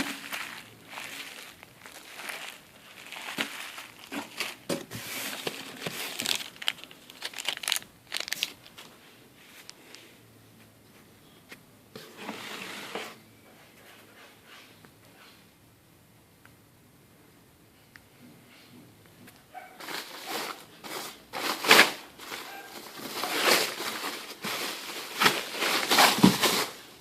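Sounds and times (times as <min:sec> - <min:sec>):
plastic packaging crinkling and tearing: 0:00.0 - 0:08.9, 0:19.8 - 0:26.9.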